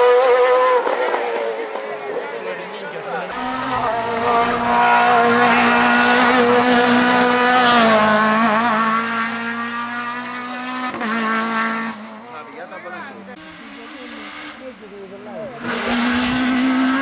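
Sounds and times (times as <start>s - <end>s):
racing car engine at high revs: 3.3s - 12.3s, 13.4s - 14.8s, 15.4s - 17.0s.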